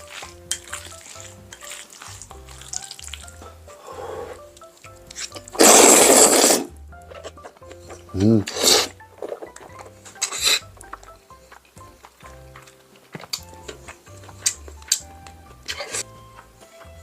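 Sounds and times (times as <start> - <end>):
background music: 0.0 - 17.0
loud rasping scrape: 5.6 - 6.7.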